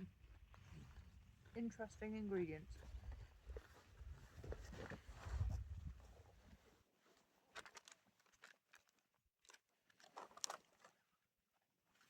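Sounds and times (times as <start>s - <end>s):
faint crinkles and crunches: 2.7s - 11.1s.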